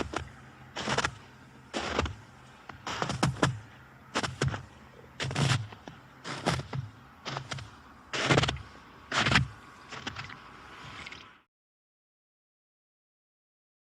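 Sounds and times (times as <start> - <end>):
footsteps crunching in snow: 0.0 - 11.0.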